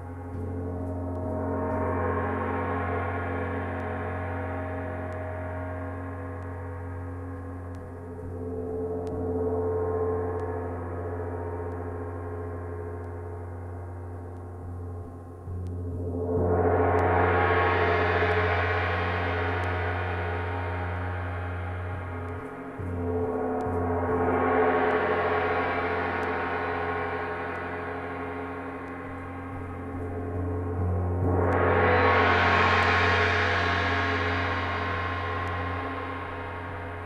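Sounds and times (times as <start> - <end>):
steady low drone: 0.0 - 37.0
gong washes: 15.5 - 37.0.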